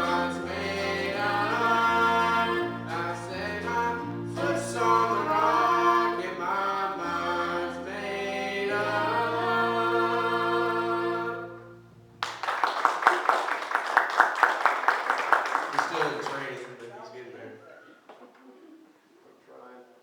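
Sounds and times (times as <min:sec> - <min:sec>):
vocal group singing gospel: 0:00.0 - 0:11.8.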